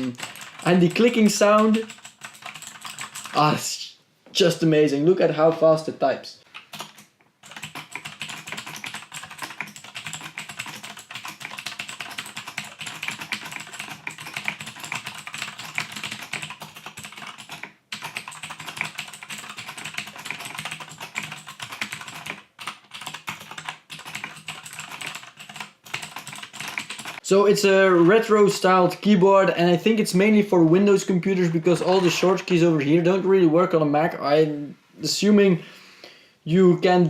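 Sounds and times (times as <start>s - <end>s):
mechanical keyboard typing clicks: 0.1s - 3.4s, 6.6s - 27.2s.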